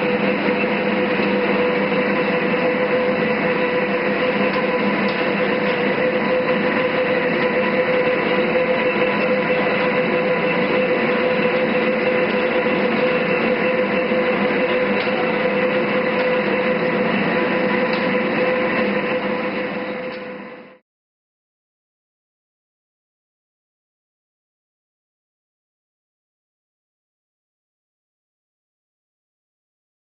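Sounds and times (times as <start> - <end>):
lathe running with gear whine: 0.0 - 20.8.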